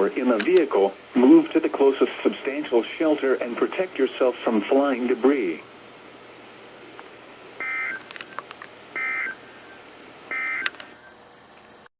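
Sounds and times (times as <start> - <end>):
two-tone digital data bursts: 7.6 - 8.0, 9.0 - 9.4, 10.3 - 10.7.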